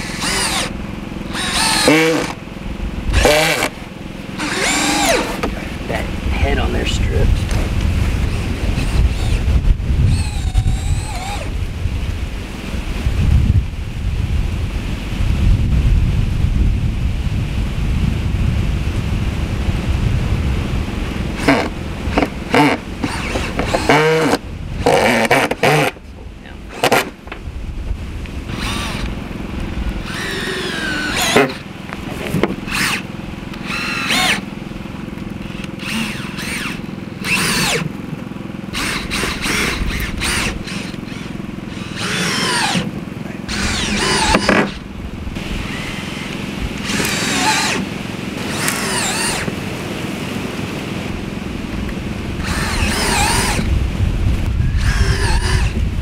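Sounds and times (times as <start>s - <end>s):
power drill driving screws: 0.0s - 2.4s, 3.1s - 3.8s, 4.4s - 5.6s, 8.3s - 9.5s, 10.1s - 11.5s, 21.4s - 26.0s, 26.7s - 27.2s, 28.5s - 29.1s, 30.0s - 31.7s, 32.4s - 33.0s, 33.6s - 34.4s, 35.4s - 38.0s, 38.7s - 42.9s, 43.5s - 44.8s, 45.4s - 49.5s, 52.4s - 53.7s, 54.7s - 55.8s.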